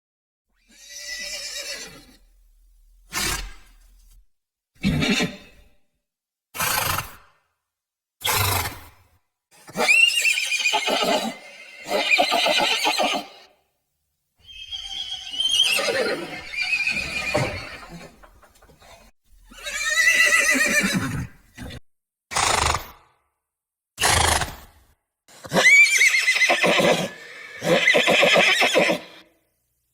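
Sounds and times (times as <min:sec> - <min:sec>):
horse whinnying: 0:00.6 - 0:02.2, 0:04.8 - 0:05.6, 0:09.7 - 0:13.5, 0:14.4 - 0:21.4, 0:25.4 - 0:29.3.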